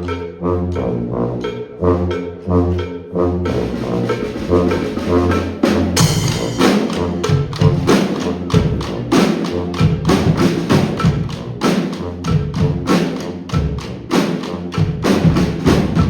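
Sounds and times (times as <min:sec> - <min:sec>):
brass band playing: 0:00.0 - 0:16.0
drums and cymbals: 0:03.5 - 0:16.0.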